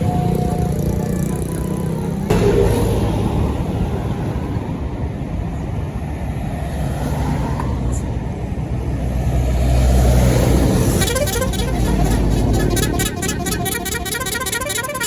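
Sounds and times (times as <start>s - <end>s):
multi-tone bus horn notes: 0.0s - 2.1s, 10.8s - 15.0s
bus engine running loudly: 7.8s - 15.0s.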